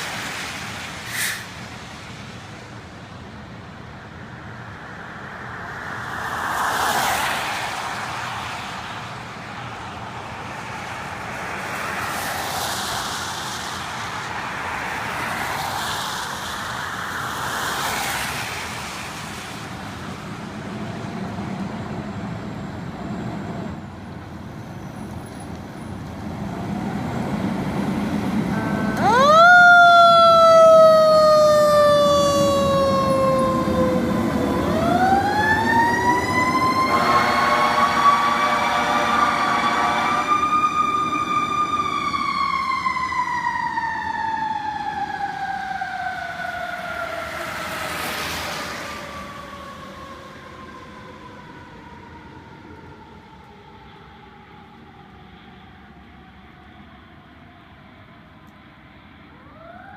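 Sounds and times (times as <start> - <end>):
vehicles passing: 0.0 - 59.9.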